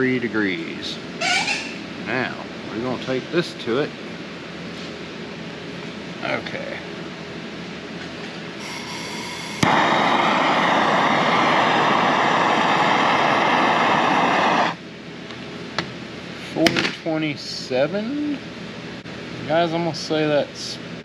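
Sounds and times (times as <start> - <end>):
gas hissing: 8.6 - 14.8
torch flame burning loudly: 8.6 - 14.8
torch lighting click: 9.6 - 14.8.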